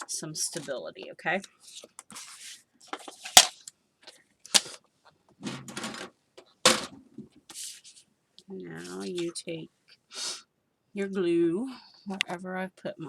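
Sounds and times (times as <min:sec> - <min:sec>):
paper rustling and sliding: 0:01.6 - 0:03.6, 0:07.5 - 0:08.0.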